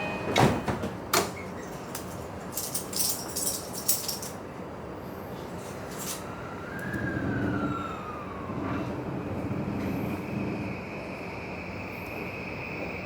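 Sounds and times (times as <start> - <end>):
light jingling and rattling: 1.7 - 4.4.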